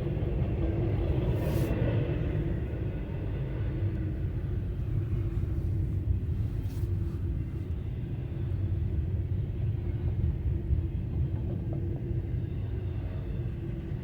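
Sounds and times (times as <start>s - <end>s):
freight train rumbling past: 0.0s - 14.0s.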